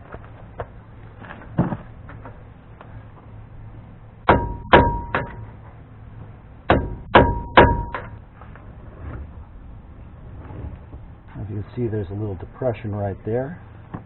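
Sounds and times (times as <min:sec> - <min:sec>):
hammer blows on metal: 0:04.3 - 0:05.6, 0:06.7 - 0:08.2.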